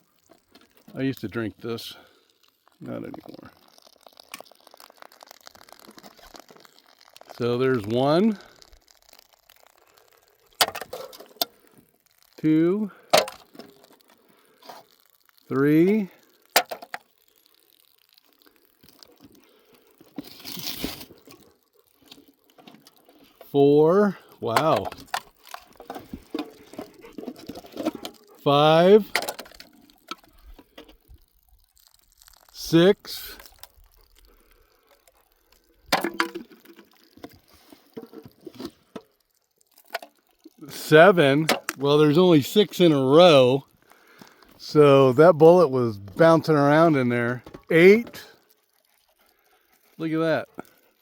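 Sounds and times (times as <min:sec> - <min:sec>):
cans rustling and tapping: 0:00.2 - 0:15.5, 0:16.1 - 0:23.5, 0:24.1 - 0:32.5, 0:33.1 - 0:48.4
cans knocking together: 0:10.6 - 0:11.6, 0:13.1 - 0:13.8, 0:16.6 - 0:17.1
cardboard crinkling and tearing: 0:20.2 - 0:21.4.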